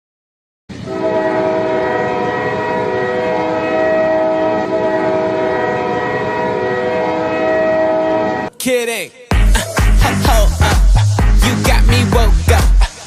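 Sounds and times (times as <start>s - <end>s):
goal horn blast: 0.8s - 8.5s.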